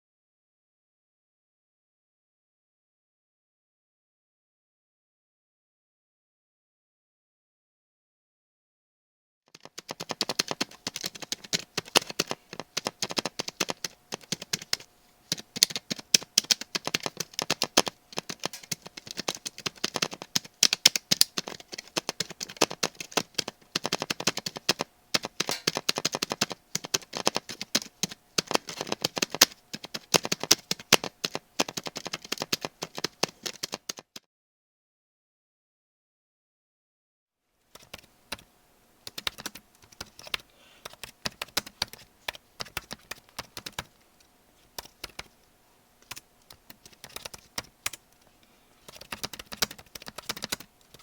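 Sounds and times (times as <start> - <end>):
fast keyboard typing: 9.5 - 34.2, 37.7 - 44.0, 44.6 - 45.4, 46.0 - 48.1, 48.8 - 51.0.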